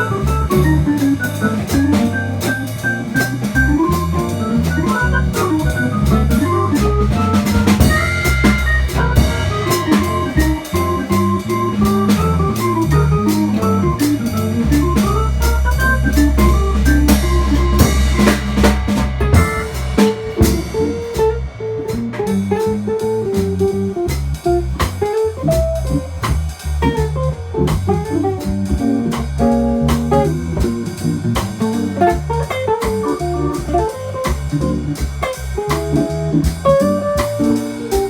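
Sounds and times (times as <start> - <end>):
organ: 0.0 - 21.1
drum kit: 0.0 - 38.0
jazz guitar solo: 0.0 - 38.0.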